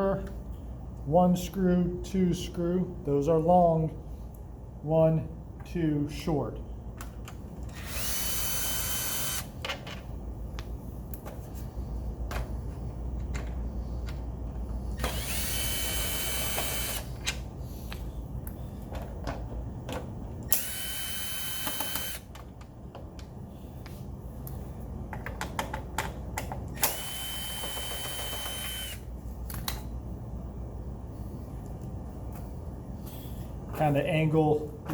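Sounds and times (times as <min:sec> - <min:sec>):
cordless drill whining: 0:07.7 - 0:09.5, 0:15.0 - 0:17.2, 0:20.5 - 0:22.3, 0:26.8 - 0:29.1.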